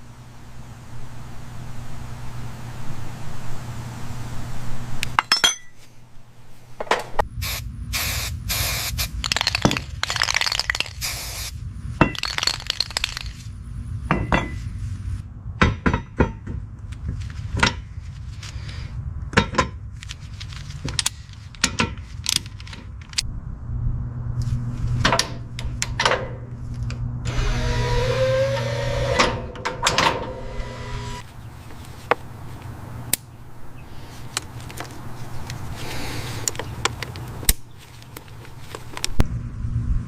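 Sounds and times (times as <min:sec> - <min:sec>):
low steady hum: 0:00.0 - 0:40.0
hissing noise: 0:07.3 - 0:09.2, 0:11.0 - 0:11.6
tools knocking and clanking: 0:14.1 - 0:14.6, 0:15.6 - 0:16.6, 0:20.9 - 0:22.0.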